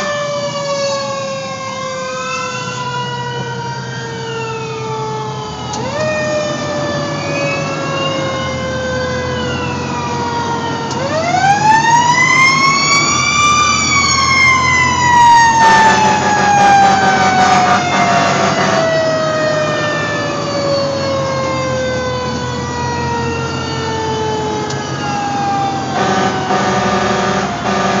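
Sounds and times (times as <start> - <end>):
fire engine siren winding: 0.0 - 28.0
steady horn blast: 15.5 - 19.3, 25.8 - 28.0.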